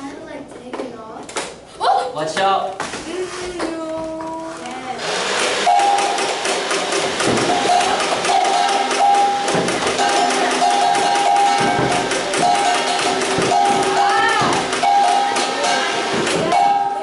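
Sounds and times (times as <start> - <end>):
flywheel motor whine: 4.9 - 17.0
foam balls clattering: 5.4 - 16.8.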